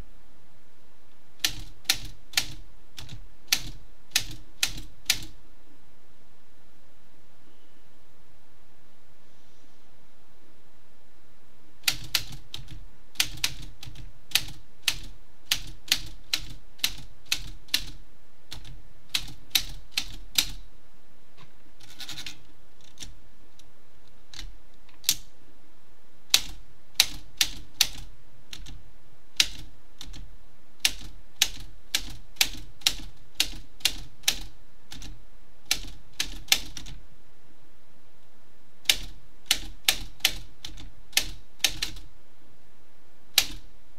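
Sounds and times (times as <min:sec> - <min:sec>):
typewriter keys clicking: 0:01.4 - 0:05.4, 0:11.8 - 0:20.6, 0:26.3 - 0:28.8, 0:29.4 - 0:30.2, 0:30.8 - 0:37.0, 0:38.9 - 0:42.1, 0:43.3 - 0:43.7.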